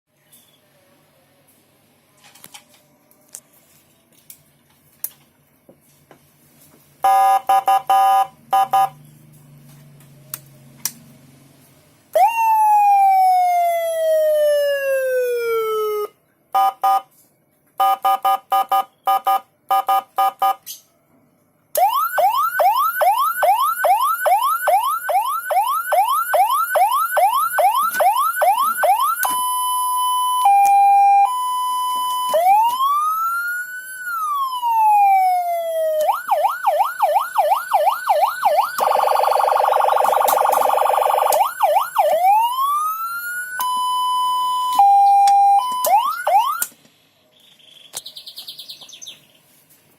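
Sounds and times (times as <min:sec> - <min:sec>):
electronic siren cycling tones: 0:07.0 - 0:09.0, 0:12.2 - 0:17.0, 0:21.7 - 0:46.7.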